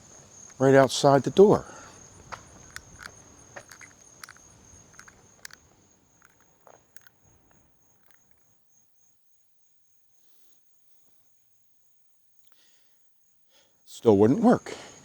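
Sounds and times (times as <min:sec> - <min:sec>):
faint clicks: 0:00.0 - 0:08.6
cricket chirring: 0:00.0 - 0:15.0.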